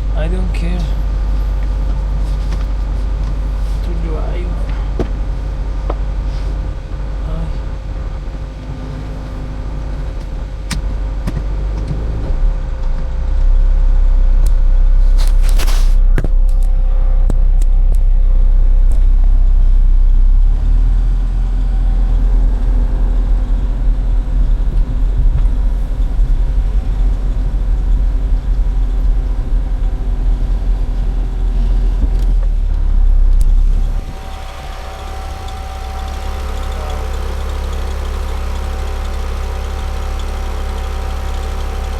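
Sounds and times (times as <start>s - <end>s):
vehicle engine and road rumble: 0.0s - 41.9s
short clatter: 15.1s - 16.8s.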